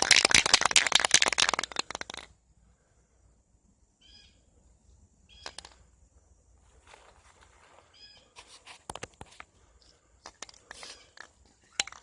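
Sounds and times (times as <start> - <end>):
spray can ball rattling: 0.0 - 2.4.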